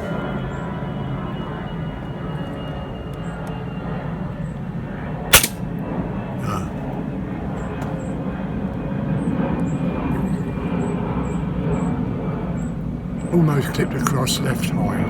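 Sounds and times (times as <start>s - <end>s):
air rifle shot: 5.3s - 5.6s.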